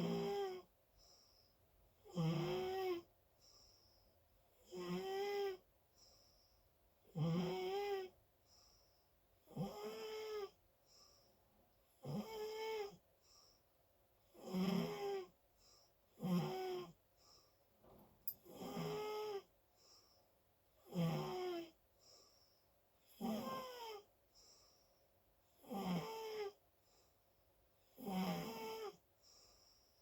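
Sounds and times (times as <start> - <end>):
loud pitched snores: 0.0 - 0.7, 2.0 - 3.1, 4.6 - 5.6, 7.1 - 8.1, 9.5 - 10.6, 12.0 - 13.0, 14.3 - 15.3, 16.2 - 17.0, 18.5 - 19.5, 20.9 - 21.8, 23.1 - 24.0, 25.6 - 26.6, 27.9 - 29.0
soft breathing: 0.9 - 1.7, 3.4 - 4.2, 5.9 - 6.8, 8.4 - 9.2, 10.8 - 11.5, 13.2 - 13.8, 17.1 - 18.3, 19.7 - 20.4, 21.9 - 22.8, 24.2 - 25.2, 29.2 - 30.0.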